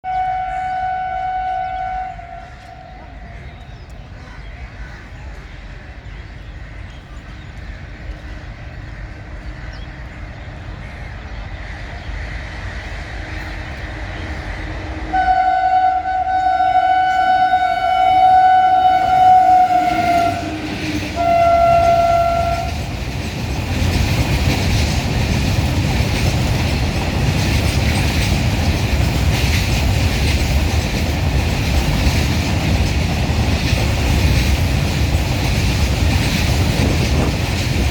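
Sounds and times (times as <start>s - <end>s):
train horn blast: 0.0s - 3.3s, 15.0s - 22.9s
locomotive rumble: 0.0s - 37.9s
wagons clickety-clack: 22.4s - 37.9s.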